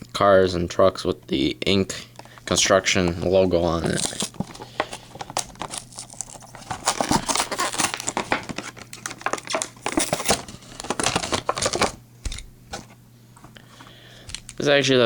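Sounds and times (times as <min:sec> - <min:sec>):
packaging crinkling and tearing: 0:03.2 - 0:12.9.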